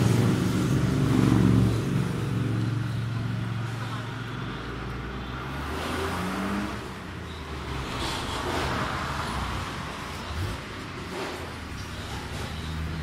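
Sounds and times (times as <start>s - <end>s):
car engines running: 0.0s - 13.0s.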